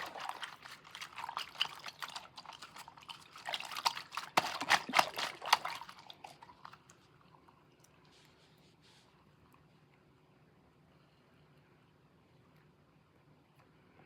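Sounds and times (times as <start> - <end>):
squishy toy wet squelching: 0.0 - 9.0.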